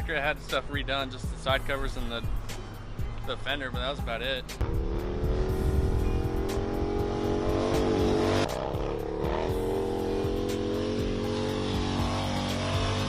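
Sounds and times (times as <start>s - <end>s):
music track: 0.0s - 13.0s
motorcycle engine revving: 4.6s - 13.0s.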